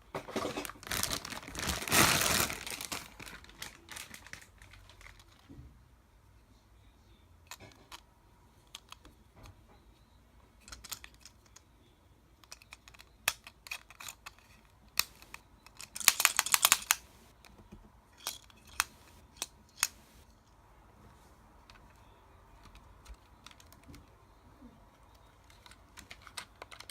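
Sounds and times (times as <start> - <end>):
plastic toy clicking and clacking: 8.7 - 9.2, 10.6 - 11.7, 12.4 - 17.0, 22.6 - 24.1, 25.0 - 26.9.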